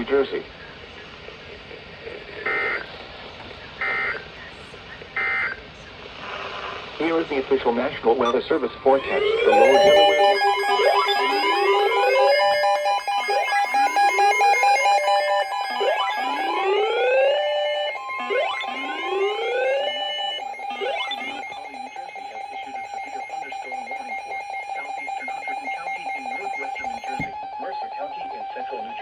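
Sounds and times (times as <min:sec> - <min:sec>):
rising alert sweeps: 0:09.0 - 0:27.2
steady buzzing tone: 0:09.1 - 0:27.3.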